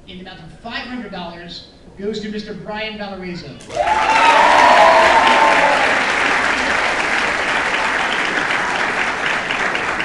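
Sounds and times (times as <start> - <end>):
voices cheering: 3.6 - 10.0
audience applauding: 3.7 - 10.0.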